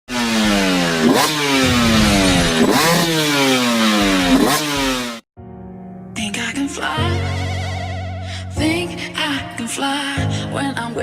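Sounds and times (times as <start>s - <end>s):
motorcycle engine revving: 0.1s - 5.3s.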